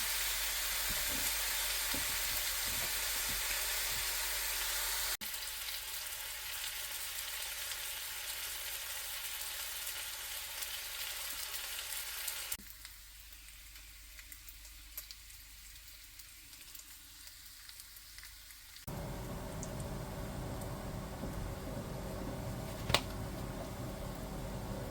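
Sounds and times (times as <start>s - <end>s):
bacon sizzling in a pan: 0.0s - 18.9s
fat popping and crackling: 18.9s - 24.8s
steady low hum: 18.9s - 24.9s.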